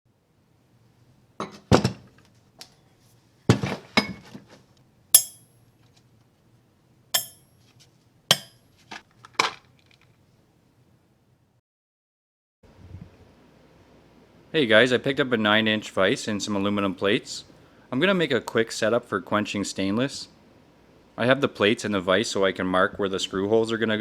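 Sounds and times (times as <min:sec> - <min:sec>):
metal objects clinking: 0:05.2 - 0:05.5, 0:07.2 - 0:07.5, 0:08.3 - 0:08.6.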